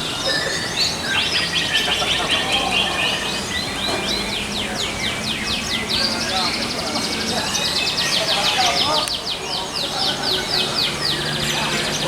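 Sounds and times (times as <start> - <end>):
canaries singing: 0.0 - 12.0.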